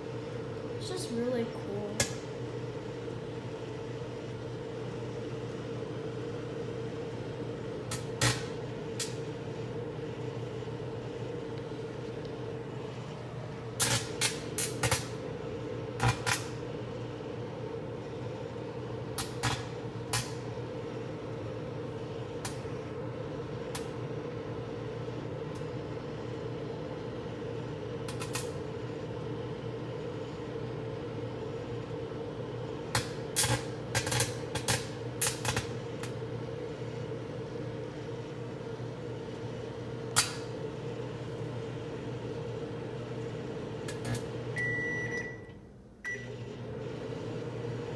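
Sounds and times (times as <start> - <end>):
microwave oven humming: 0.0 - 47.9
arcing snaps and crackles: 13.8 - 15.2, 16.0 - 16.6, 28.1 - 28.6, 32.9 - 36.2.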